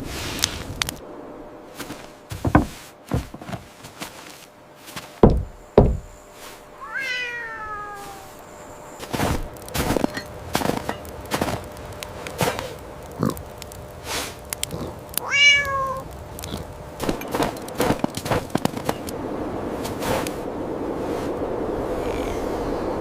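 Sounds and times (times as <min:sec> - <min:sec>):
dull thumps: 0:01.8 - 0:04.3, 0:04.9 - 0:06.2
quick knocks: 0:02.3 - 0:03.6, 0:05.2 - 0:06.2
cat meowing: 0:06.8 - 0:08.4, 0:15.2 - 0:16.2.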